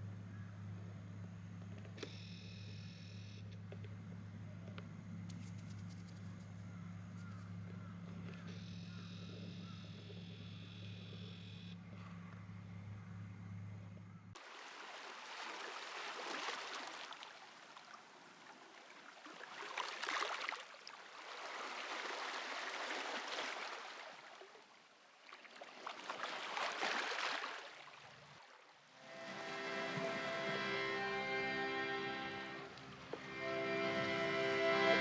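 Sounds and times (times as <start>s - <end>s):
low steady hum: 0.0s - 14.4s, 29.0s - 35.0s.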